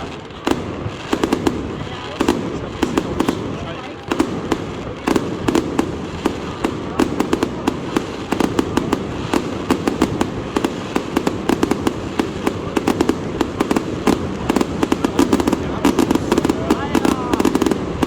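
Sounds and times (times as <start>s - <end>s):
fireworks bangs and crackles: 0.0s - 18.0s.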